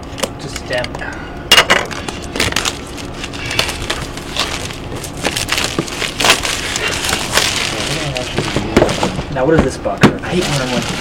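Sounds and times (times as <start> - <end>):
packaging being torn and crumpled: 1.9 - 9.2, 10.3 - 11.0.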